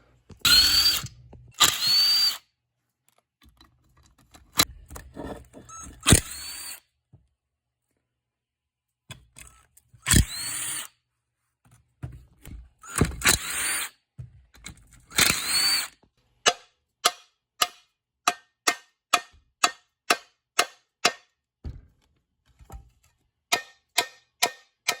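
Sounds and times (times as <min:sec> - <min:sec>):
power drill spinning: 0:00.4 - 0:02.4, 0:05.7 - 0:06.8, 0:10.1 - 0:10.9, 0:12.8 - 0:13.9, 0:15.1 - 0:15.9.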